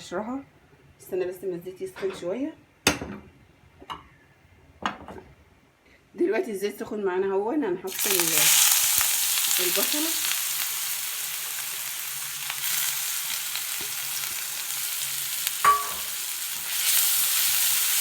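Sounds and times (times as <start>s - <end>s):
onion sizzling in hot oil: 7.9s - 18.0s.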